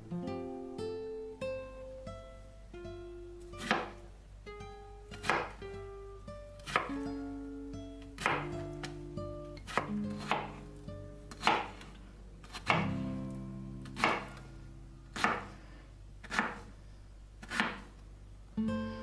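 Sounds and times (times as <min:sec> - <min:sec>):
plucked-string background music: 0:00.0 - 0:11.9, 0:12.5 - 0:15.5, 0:18.6 - 0:19.0
knife chopping on cutting board: 0:03.6 - 0:04.0, 0:05.1 - 0:05.6, 0:06.6 - 0:07.0, 0:08.2 - 0:09.0, 0:09.7 - 0:10.6, 0:11.3 - 0:12.9, 0:13.9 - 0:14.4, 0:15.1 - 0:15.5, 0:16.2 - 0:16.7, 0:17.4 - 0:17.9.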